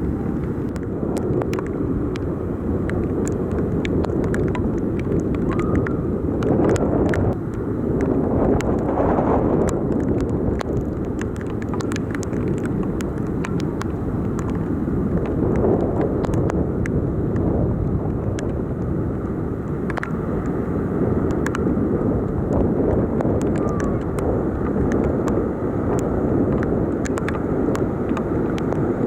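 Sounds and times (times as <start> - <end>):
torrential rain on flooded street: 0.0 - 29.0
sharp ticks: 0.4 - 8.8, 9.6 - 16.6, 19.9 - 20.2.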